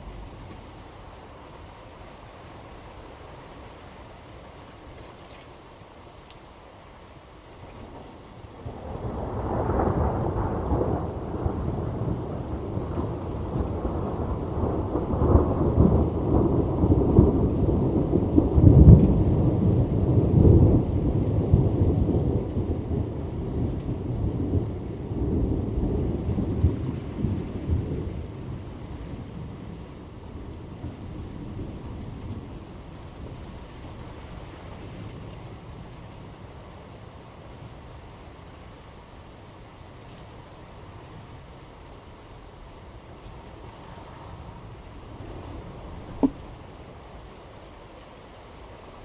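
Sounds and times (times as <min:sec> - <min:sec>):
thunder rumbling: 0:00.0 - 0:02.2, 0:07.8 - 0:36.4, 0:44.3 - 0:47.3
steady rain: 0:00.0 - 0:49.0.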